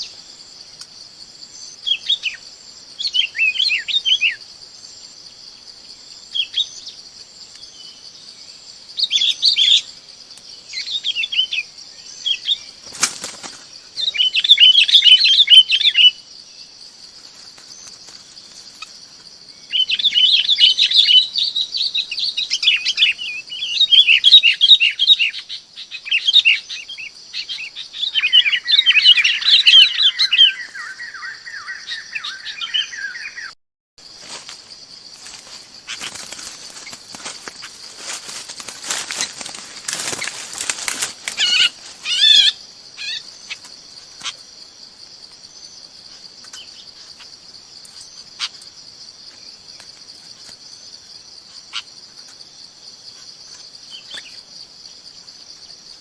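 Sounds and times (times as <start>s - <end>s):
birds chattering calls: 6.3s - 33.6s, 35.1s - 44.6s.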